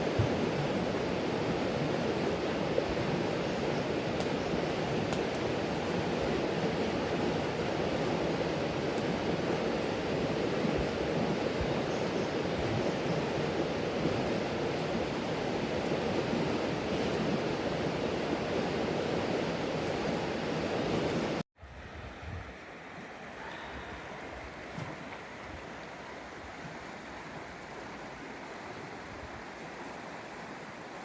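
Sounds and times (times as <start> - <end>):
mountain stream rushing: 0.0 - 21.4, 22.5 - 31.0
campfire crackling pops: 4.1 - 4.4, 5.0 - 5.5.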